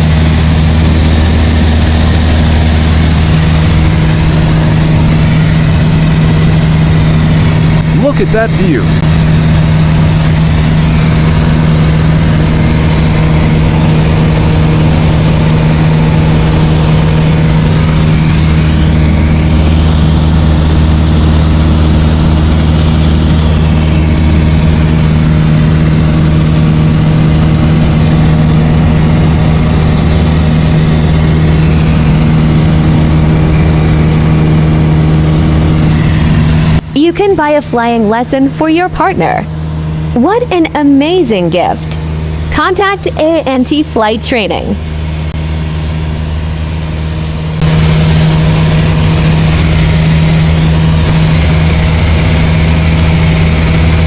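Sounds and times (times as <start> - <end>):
deeper hum: 0.0 - 54.0
light aircraft engine droning: 0.0 - 54.0.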